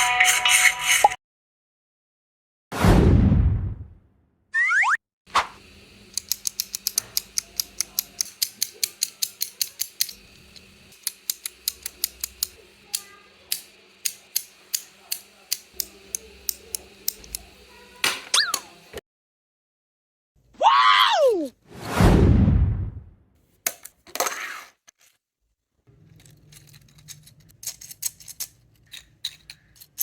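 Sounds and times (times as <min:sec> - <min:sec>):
plastic clicker toy clicking: 0:06.1 - 0:17.5
swooshing sound effect: 0:21.7 - 0:23.1.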